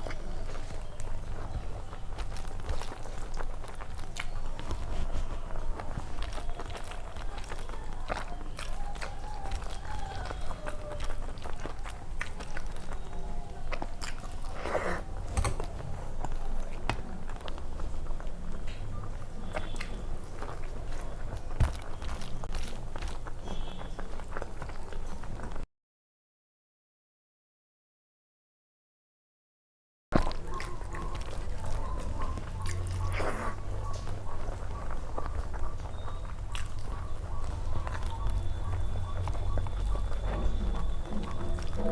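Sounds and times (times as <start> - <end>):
person chewing with wet smacking: 0.0 - 25.6, 30.2 - 41.9
wet mouth clicks: 30.2 - 41.9.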